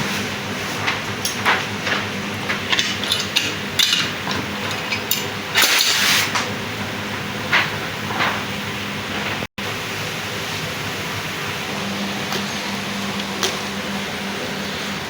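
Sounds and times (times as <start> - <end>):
steady hum and hiss: 0.0 - 15.0
metal tools clinking: 2.7 - 6.1.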